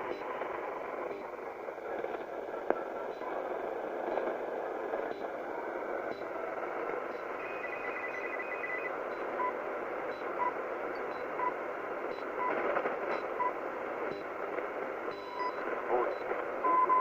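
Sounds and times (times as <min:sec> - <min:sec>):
radio receiver hiss: 0:00.0 - 0:17.0
short time-signal beeps: 0:07.1 - 0:12.6.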